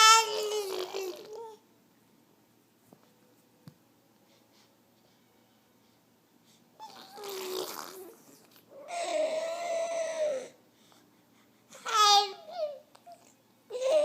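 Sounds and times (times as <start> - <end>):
baby blowing lip raspberry: 6.8 - 8.6.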